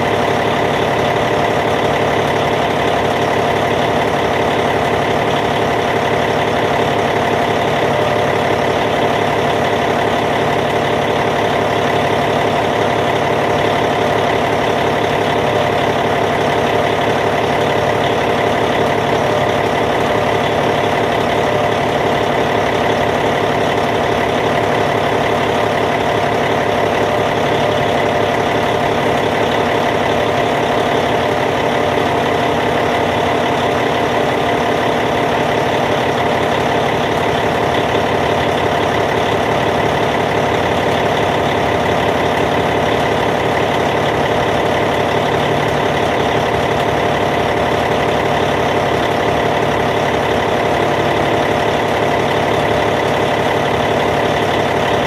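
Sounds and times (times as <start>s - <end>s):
diesel engine idling: 0.0s - 55.0s.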